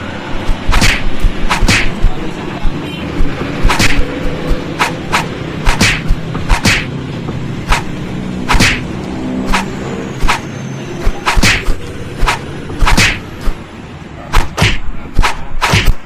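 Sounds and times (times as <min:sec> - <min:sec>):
hammer striking metal: 0:00.4 - 0:02.2, 0:03.6 - 0:07.0, 0:07.6 - 0:08.9, 0:09.5 - 0:13.6, 0:14.3 - 0:16.0.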